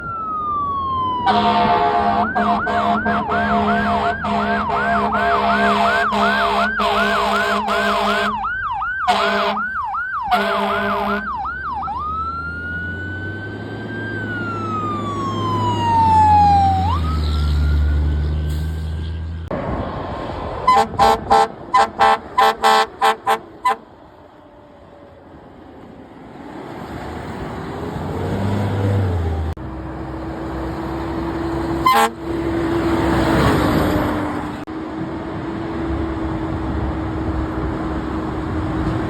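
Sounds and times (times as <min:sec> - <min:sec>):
fire truck siren: 0:00.0 - 0:19.5, 0:20.5 - 0:26.1, 0:26.8 - 0:34.8
air horn blasts: 0:01.3 - 0:08.4, 0:09.1 - 0:11.4, 0:20.7 - 0:23.9, 0:31.8 - 0:32.7.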